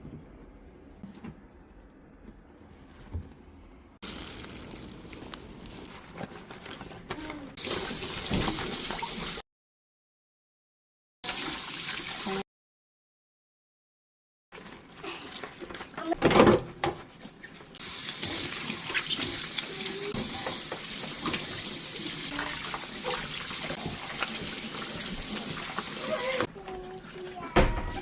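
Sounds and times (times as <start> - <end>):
faucet running into sink: 7.6 - 9.4, 17.8 - 26.5.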